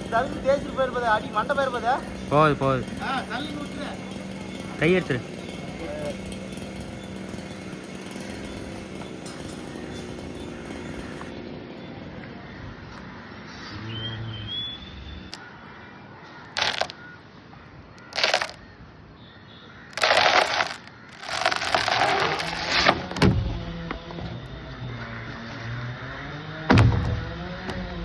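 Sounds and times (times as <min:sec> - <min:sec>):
leafy branches rustling and crackling: 0:19.9 - 0:24.5.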